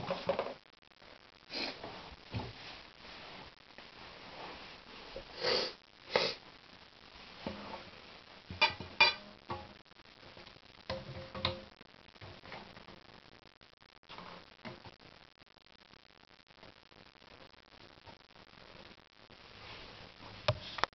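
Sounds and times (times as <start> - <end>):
breathy sniffs: 5.3 - 6.4.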